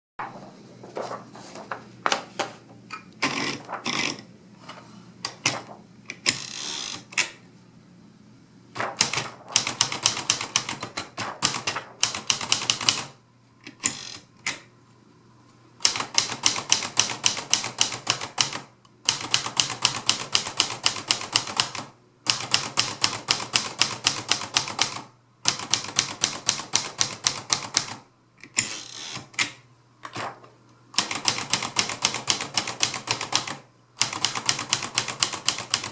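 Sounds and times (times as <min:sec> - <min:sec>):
manual typewriter typing: 0:08.8 - 0:14.6, 0:15.8 - 0:30.4, 0:31.0 - 0:35.9.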